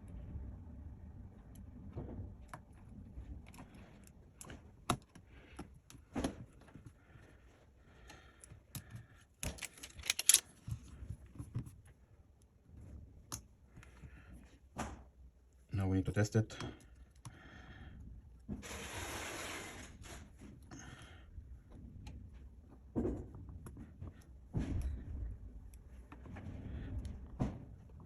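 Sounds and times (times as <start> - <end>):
tools clicking and tapping: 9.4 - 10.4.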